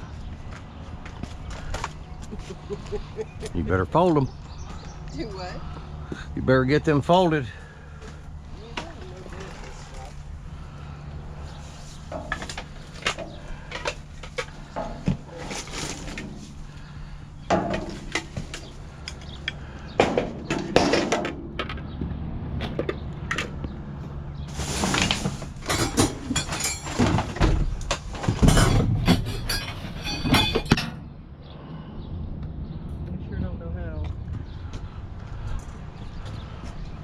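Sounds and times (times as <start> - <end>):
steady low hum: 0.0 - 24.5
scrap metal clanking: 11.4 - 19.4, 24.5 - 31.0.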